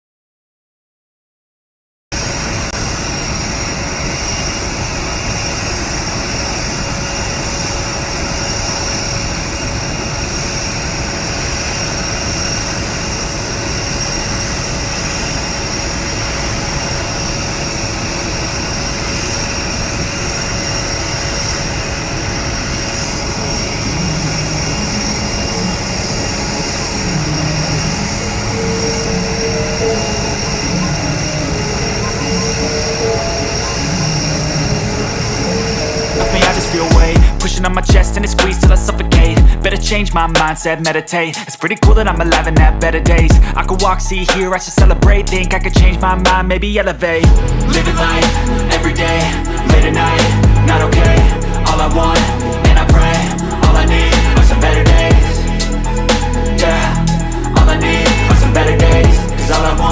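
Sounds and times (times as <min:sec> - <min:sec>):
jet engine running: 0:02.2 - 0:59.9.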